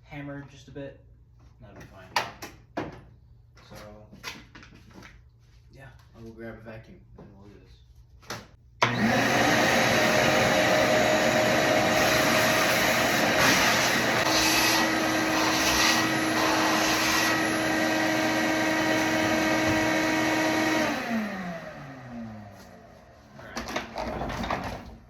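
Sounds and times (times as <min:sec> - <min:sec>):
motor winding down: 0:08.8 - 0:22.7
vacuum cleaner running: 0:08.8 - 0:23.3.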